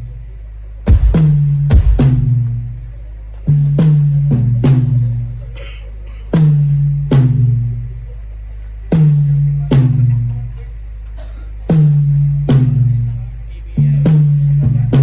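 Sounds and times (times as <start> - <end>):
steady low hum: 0.0 - 15.0
deep ringing drum hits: 0.9 - 2.5.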